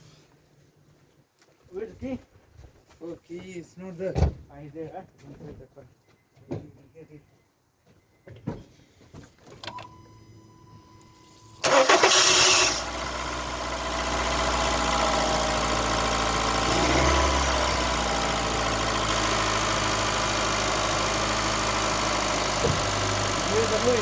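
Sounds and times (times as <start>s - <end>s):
car starter cranking: 11.5s - 24.0s
car engine idling: 11.6s - 24.0s.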